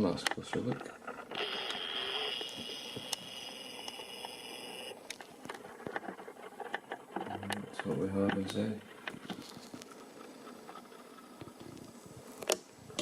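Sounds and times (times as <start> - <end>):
camera zoom motor whining: 1.1 - 5.2.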